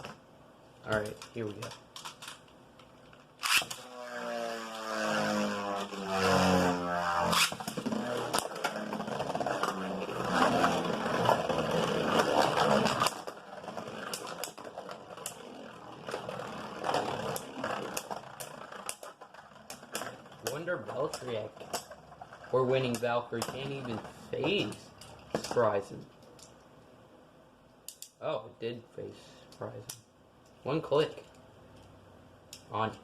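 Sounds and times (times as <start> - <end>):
spinning tops clashing and grinding: 3.2 - 25.7
spinning top whirring: 3.4 - 25.7.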